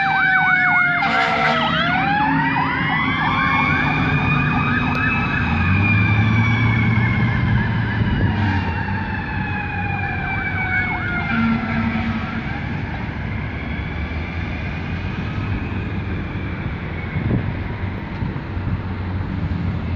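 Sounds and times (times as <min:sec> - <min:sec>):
electronic siren yelping: 0:00.0 - 0:14.7
horn blast: 0:01.0 - 0:02.0, 0:11.2 - 0:12.6.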